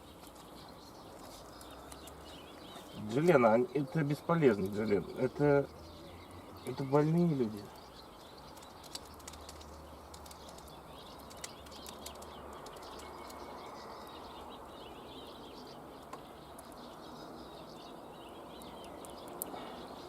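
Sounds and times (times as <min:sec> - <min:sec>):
small birds chirping: 0:00.0 - 0:20.0
faint sharp clicks: 0:08.5 - 0:13.5.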